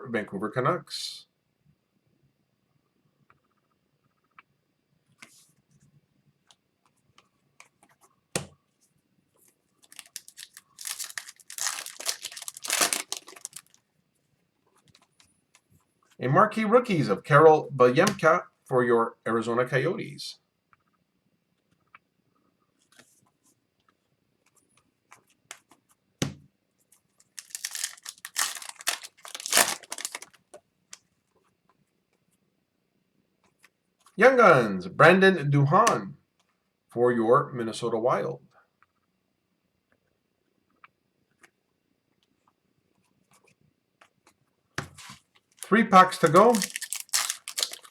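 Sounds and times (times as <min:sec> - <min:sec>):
foil wrapper tearing and crinkling: 0:09.9 - 0:13.8, 0:27.3 - 0:30.4, 0:45.6 - 0:47.9
cards clicking: 0:27.4 - 0:30.3.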